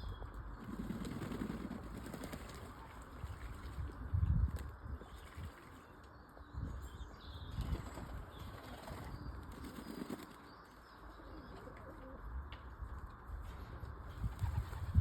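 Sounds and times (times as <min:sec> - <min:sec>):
pigeons flapping wings: 0:00.6 - 0:03.6, 0:07.8 - 0:10.4, 0:14.2 - 0:15.0.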